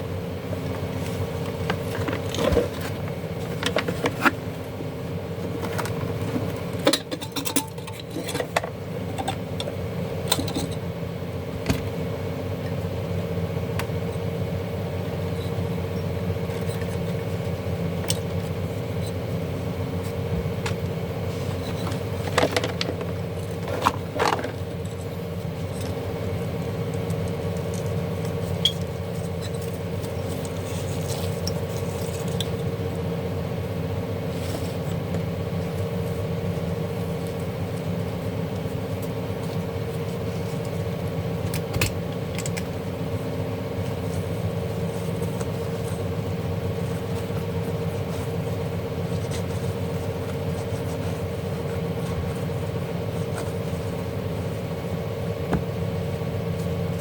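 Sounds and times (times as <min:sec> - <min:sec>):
steady background hum: 0:00.0 - 0:57.0
tools and small parts clinking: 0:06.8 - 0:09.4, 0:10.3 - 0:10.8.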